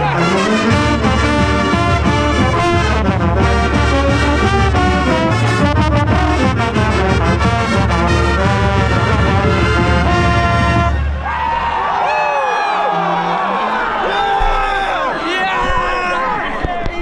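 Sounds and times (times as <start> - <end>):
marching band playing: 0.0 - 12.0.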